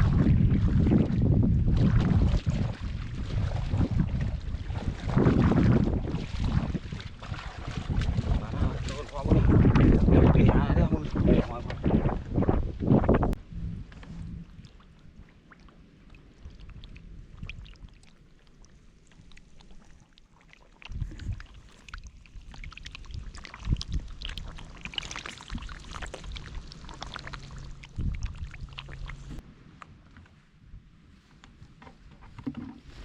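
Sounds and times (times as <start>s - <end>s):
dull low thumps: 0.0s - 15.2s
water splashing and sloshing: 0.0s - 30.4s.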